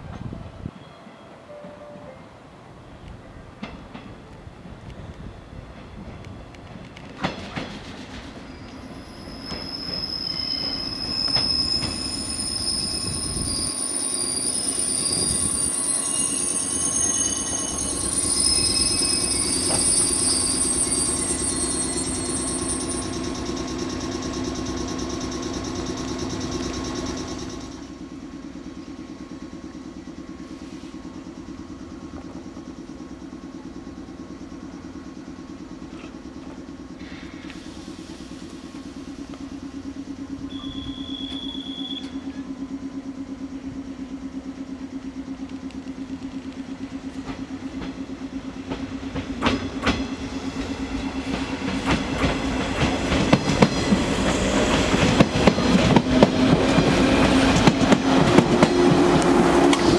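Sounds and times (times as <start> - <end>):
train humming at platform: 0.0 - 59.9
train wheels clacking over rail joints: 5.8 - 8.4, 45.4 - 59.9.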